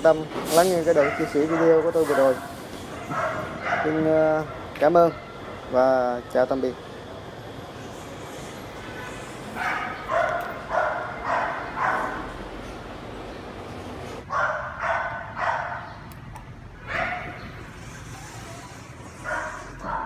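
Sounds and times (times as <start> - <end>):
dog barking: 1.0 - 4.0, 9.6 - 12.2, 14.3 - 15.9, 16.8 - 17.4, 19.2 - 20.0.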